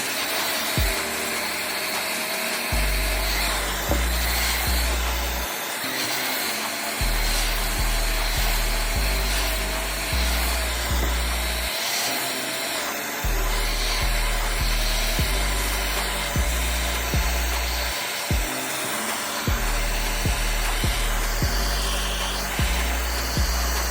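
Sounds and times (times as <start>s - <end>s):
background music with bass and beat: 0.0s - 23.9s.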